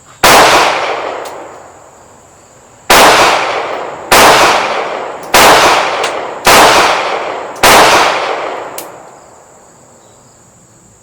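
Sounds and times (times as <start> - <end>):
echoing gunshots: 0.2 - 1.9, 2.9 - 9.1.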